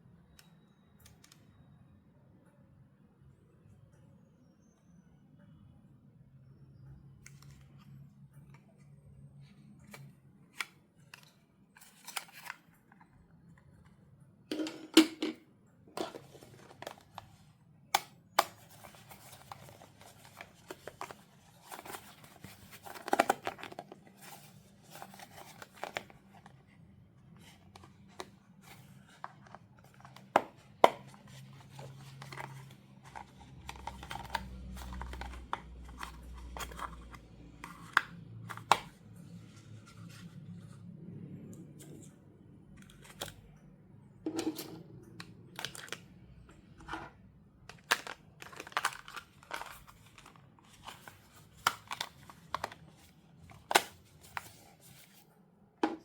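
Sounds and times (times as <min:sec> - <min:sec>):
packaging crinkling and clicking: 0:09.8 - 0:13.1, 0:18.0 - 0:26.5, 0:27.4 - 0:38.9, 0:45.3 - 0:46.1, 0:47.7 - 0:55.0
packaging tearing: 0:47.7 - 0:52.8.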